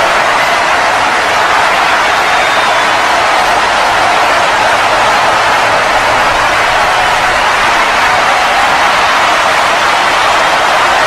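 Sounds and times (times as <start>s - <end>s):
crowd cheering: 0.0s - 11.0s.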